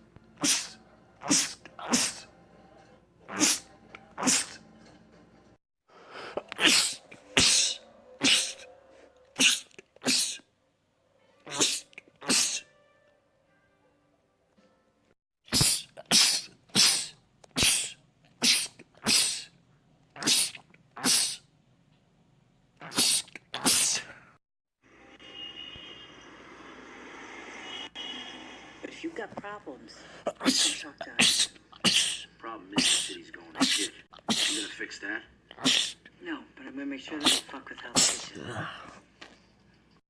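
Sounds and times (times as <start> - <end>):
man sneezing: 0.4 - 2.3, 3.3 - 4.6, 6.4 - 8.7, 9.4 - 10.5, 11.5 - 12.7, 15.5 - 19.6, 20.2 - 21.4, 22.8 - 24.2, 30.2 - 34.8, 35.5 - 36.1, 37.2 - 39.0.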